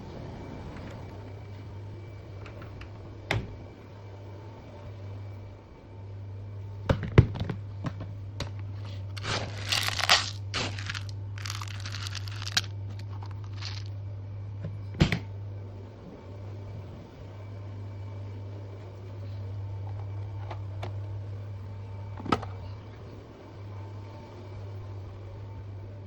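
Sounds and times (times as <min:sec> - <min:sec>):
steady low hum: 0:00.0 - 0:26.0
packaging rustling and tearing: 0:08.8 - 0:13.9.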